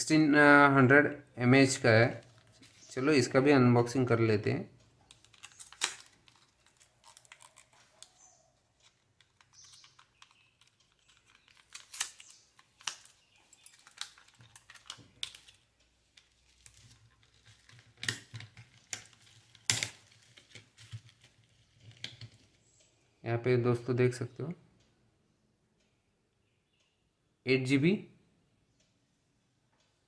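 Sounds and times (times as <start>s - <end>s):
packaging clicks and taps: 5.0s - 22.6s.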